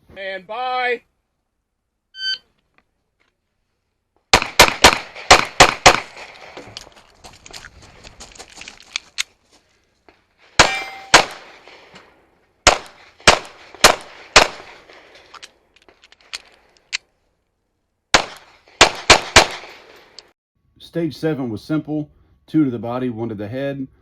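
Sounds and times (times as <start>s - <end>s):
pistol shots: 4.3s - 6.6s, 10.6s - 11.8s, 12.6s - 15.1s, 18.1s - 20.2s
brief metallic ring: 10.7s - 11.2s.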